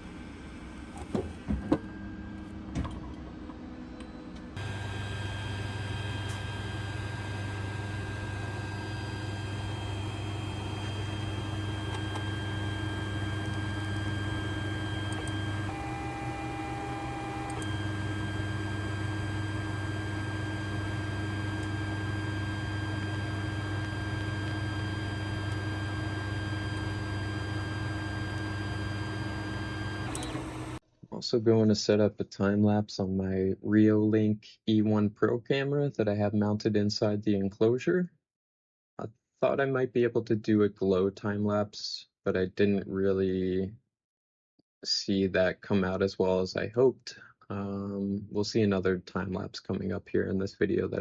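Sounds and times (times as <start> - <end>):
printer stepper motors whining: 0.0 - 30.8.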